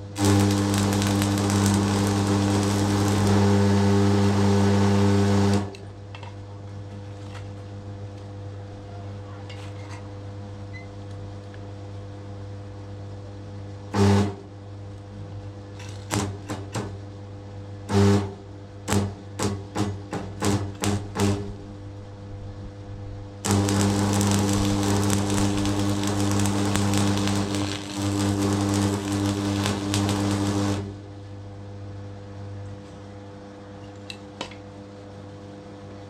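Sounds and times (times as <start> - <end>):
electric hammer running: 0.0 - 5.8, 23.4 - 31.0.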